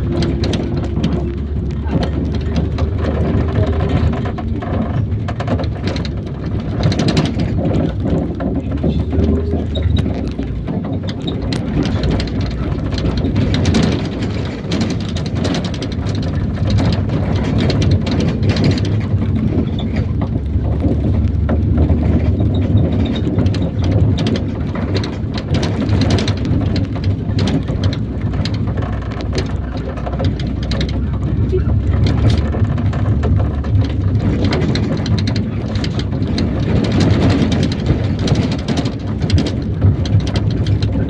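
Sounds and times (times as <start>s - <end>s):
body and fittings rattling: 0.0s - 41.0s
engine and road rumble: 0.0s - 41.0s.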